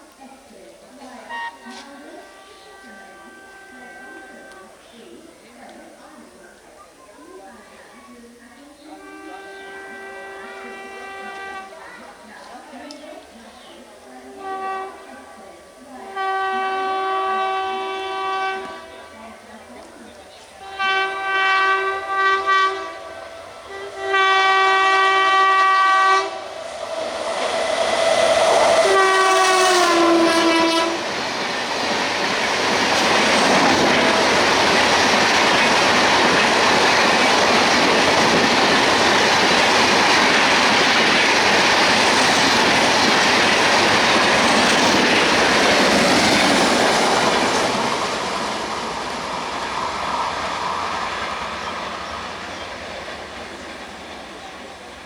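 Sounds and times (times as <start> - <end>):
train coaches rushing past: 0.0 - 55.0
locomotive horn blasts: 1.1 - 4.7, 8.9 - 11.9, 14.3 - 15.3, 16.0 - 19.4, 20.6 - 26.7, 28.5 - 31.6, 32.7 - 38.6
train wheel clatter: 26.4 - 55.0.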